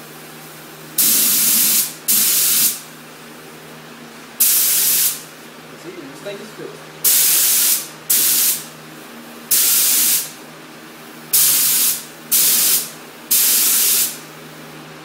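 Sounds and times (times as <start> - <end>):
spray gun hissing: 1.0 - 2.8, 4.4 - 5.2, 7.0 - 8.7, 9.5 - 10.4, 11.3 - 14.2.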